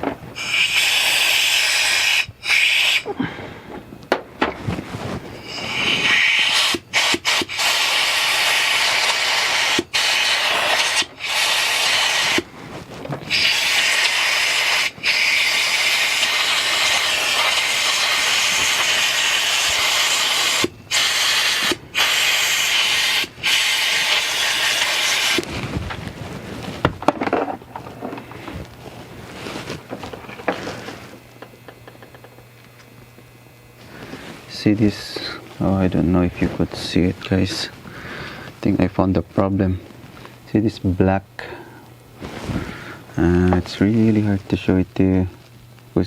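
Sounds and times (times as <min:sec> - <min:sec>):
compressed air hissing: 0:00.0 - 0:04.0, 0:04.7 - 0:12.6, 0:13.2 - 0:25.7, 0:33.7 - 0:38.8, 0:41.4 - 0:44.8.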